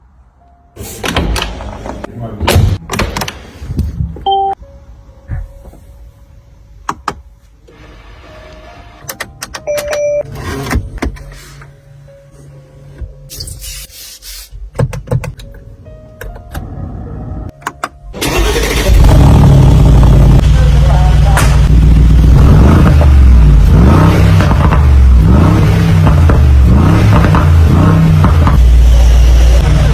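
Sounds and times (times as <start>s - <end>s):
car engine revving: 18.2s - 29.9s.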